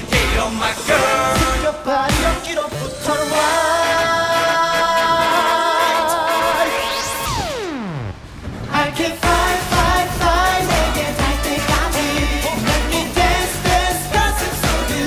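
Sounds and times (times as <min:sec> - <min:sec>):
heavy bass beat: 0:00.0 - 0:00.6, 0:01.3 - 0:02.6, 0:09.2 - 0:15.0
dance track with sung vocals: 0:00.0 - 0:07.6, 0:08.6 - 0:15.0.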